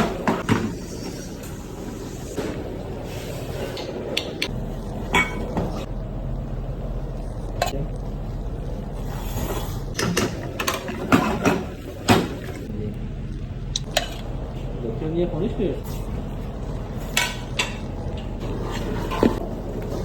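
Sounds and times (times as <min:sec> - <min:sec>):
steady low hum: 0:00.0 - 0:20.0
dishes and utensils clinking: 0:03.7 - 0:05.9, 0:17.0 - 0:19.4.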